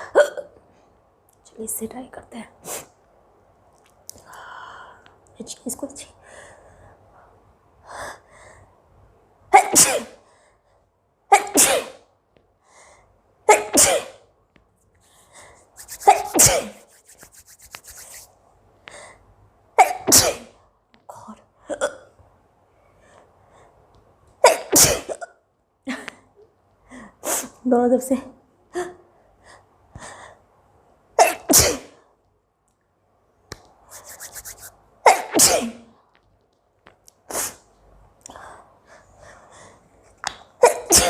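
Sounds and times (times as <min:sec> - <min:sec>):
woman sneezing: 0:09.6 - 0:10.2, 0:11.4 - 0:12.0, 0:13.5 - 0:14.2, 0:16.0 - 0:16.8, 0:35.1 - 0:35.9, 0:40.6 - 0:41.0.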